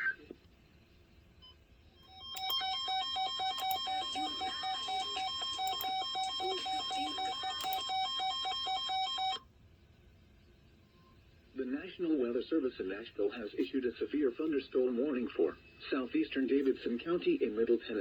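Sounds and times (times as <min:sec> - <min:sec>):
emergency alert tone beeping: 0:02.1 - 0:09.4.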